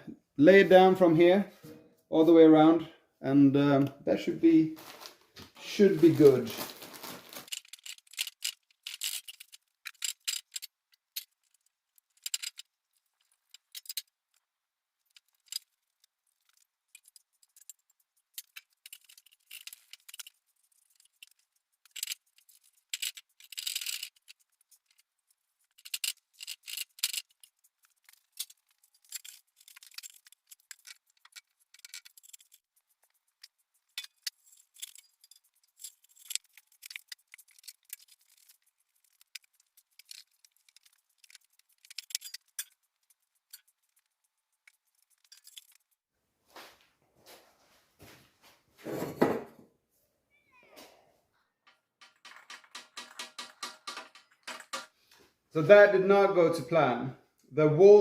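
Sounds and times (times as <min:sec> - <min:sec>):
dry rustling and scratching: 0:04.8 - 0:46.0.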